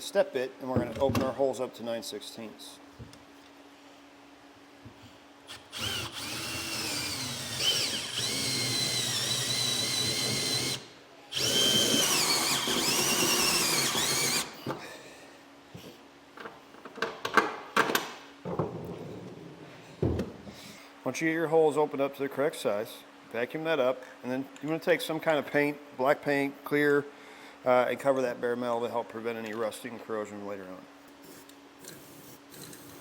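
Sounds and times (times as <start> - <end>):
power drill cutting sheet metal: 5.5 - 14.7.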